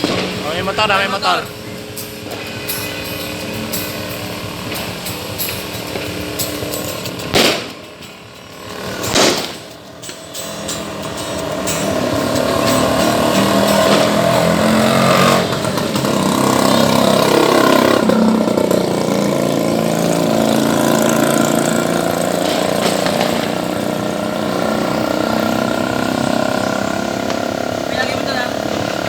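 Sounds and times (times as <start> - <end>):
motorcycle engines running: 0.0 - 29.0.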